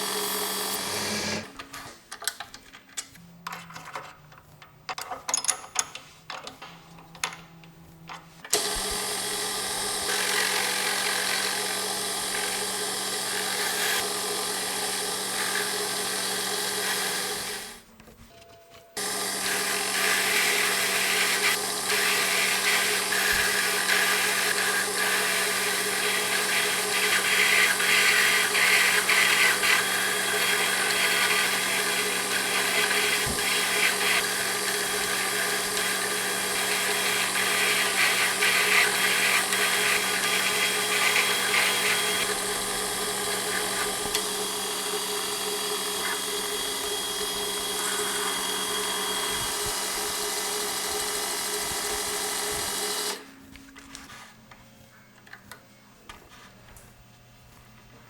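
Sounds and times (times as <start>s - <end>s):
clicks and knocks of handling: 1.6s - 8.6s
metal lathe cutting: 8.6s - 17.8s, 19.0s - 53.2s.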